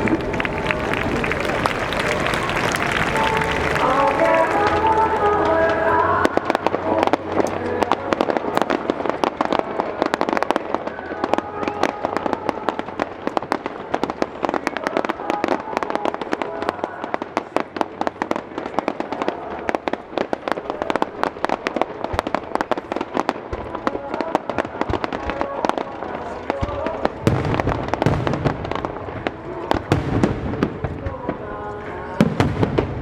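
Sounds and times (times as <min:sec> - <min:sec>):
music from loudspeakers: 0:00.0 - 0:13.4
fireworks crackling and popping: 0:00.0 - 0:33.0.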